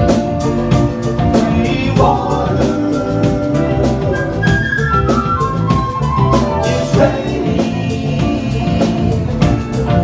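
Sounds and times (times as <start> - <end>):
bass: 0.0 - 10.0
drum kit beat with cymbals: 0.0 - 10.0
lead melody: 0.0 - 10.0
person singing: 1.2 - 4.6, 6.6 - 9.6.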